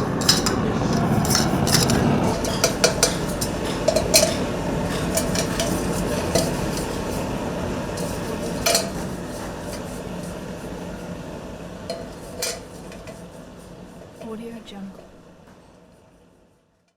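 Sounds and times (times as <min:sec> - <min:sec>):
metallic clinks on copper: 0:00.0 - 0:06.9
steady rushing noise: 0:00.0 - 0:10.8.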